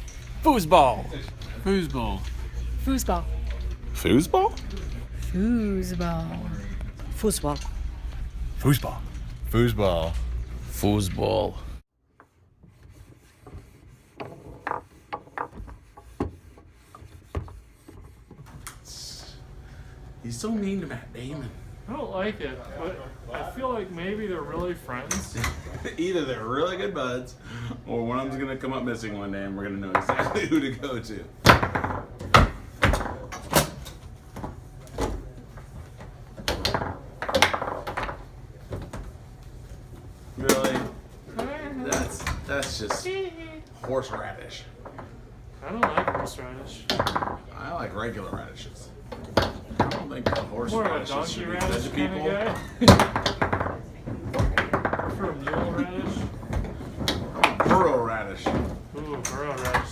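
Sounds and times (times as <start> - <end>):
foosball knocks and clacks: 14.2 - 16.6, 29.9 - 30.5, 31.4 - 33.6, 36.0 - 39.1, 43.8 - 47.6, 49.1 - 52.1, 52.8 - 59.9.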